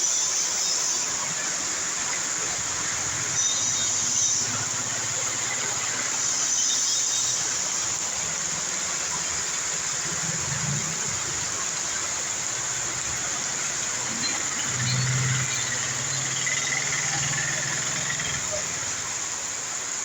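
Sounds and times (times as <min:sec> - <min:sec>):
steady rain: 0:00.0 - 0:20.0
passing vehicle hum: 0:12.7 - 0:19.2.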